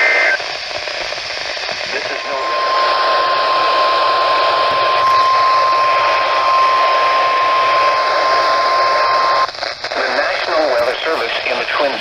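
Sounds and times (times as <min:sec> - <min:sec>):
radio reception hiss: 0:00.0 - 0:12.0
steady alarm beep: 0:01.9 - 0:09.5.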